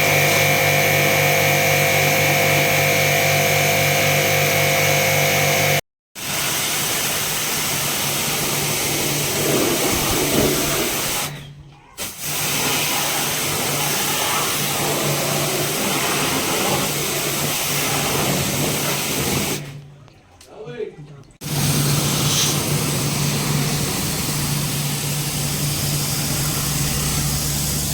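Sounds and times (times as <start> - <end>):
pressure washer pump humming: 0.0 - 11.4, 12.1 - 19.8, 21.4 - 27.9
water jet hissing: 6.2 - 11.4, 12.0 - 19.8, 21.4 - 27.9.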